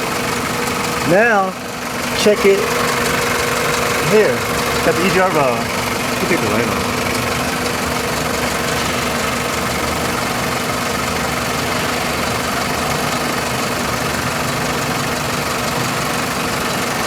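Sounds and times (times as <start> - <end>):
car engine idling: 0.0 - 17.0.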